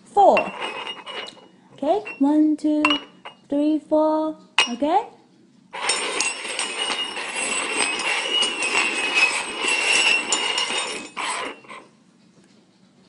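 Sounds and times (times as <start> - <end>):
cups scraping over hard surface: 0.4 - 3.4, 5.8 - 11.9.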